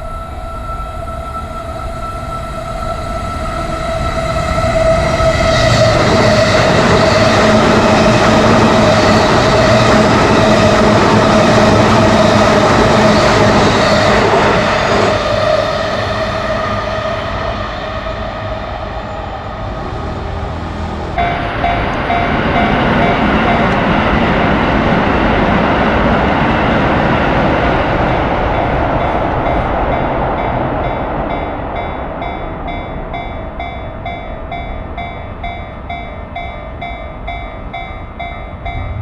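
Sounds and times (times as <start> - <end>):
railway crossing alarm: 0.0 - 39.0
train rumble and wheel noise: 0.0 - 39.0
crossing bell ringing in pulses: 21.2 - 25.1.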